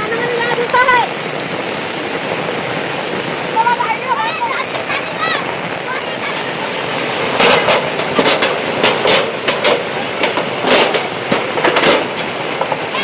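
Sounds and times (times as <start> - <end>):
water rushing: 0.0 - 13.0
sharp knocks: 7.4 - 12.9.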